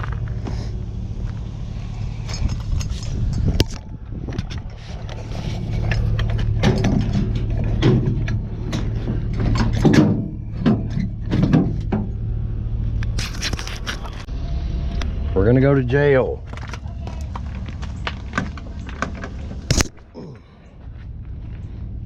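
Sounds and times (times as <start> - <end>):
vehicle engine running: 0.0 - 22.0
metal knocks and clanks: 2.2 - 12.3, 16.4 - 20.0.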